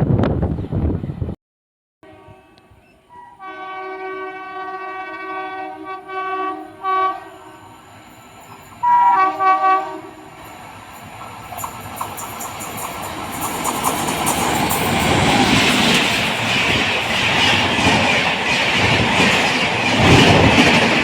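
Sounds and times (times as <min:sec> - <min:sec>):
train horn blasts: 0:02.0 - 0:07.9, 0:08.8 - 0:10.5.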